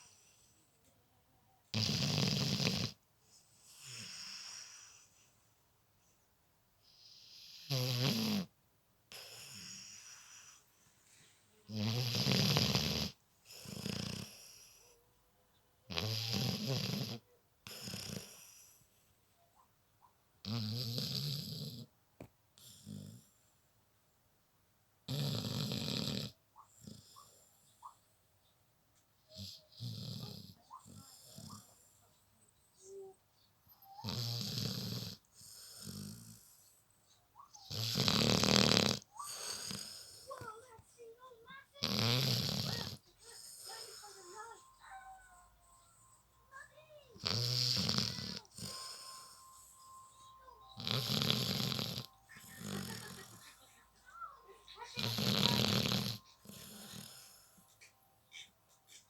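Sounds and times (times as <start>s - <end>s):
soft breaths: 0.0s - 1.7s, 2.9s - 7.7s, 9.1s - 15.6s, 16.3s - 19.7s, 26.3s - 59.0s
person snoring: 1.8s - 3.0s, 7.1s - 8.5s, 11.7s - 14.8s, 15.9s - 18.5s, 37.7s - 40.4s, 41.8s - 44.6s, 47.2s - 53.5s, 55.0s - 59.0s.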